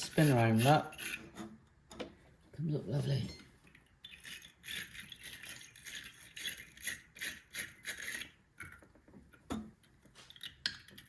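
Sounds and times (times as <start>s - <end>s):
brush scraping metal clamp: 0.0s - 1.6s, 4.0s - 8.8s.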